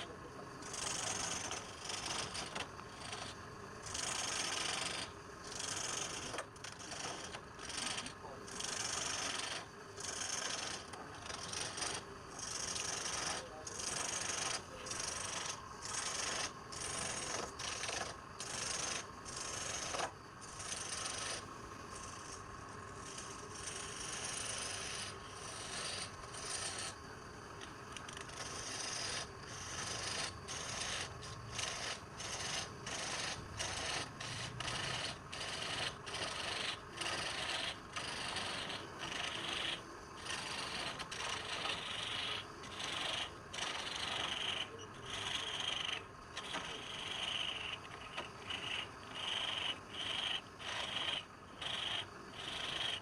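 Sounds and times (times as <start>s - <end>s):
wood being rasped by hand: 0.0s - 22.4s, 23.0s - 27.0s, 28.0s - 53.0s.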